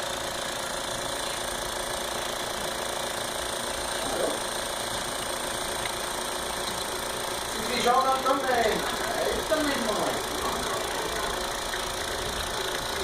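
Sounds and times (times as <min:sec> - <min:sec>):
vacuum cleaner running: 0:07.2 - 0:13.0.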